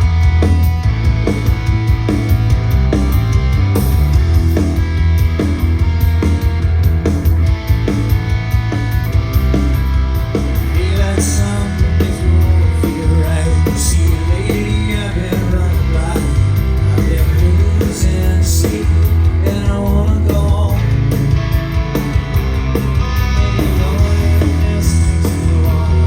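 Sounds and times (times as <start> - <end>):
rock band playing live: 0.0 - 26.0
person singing: 10.7 - 21.0, 23.4 - 26.0.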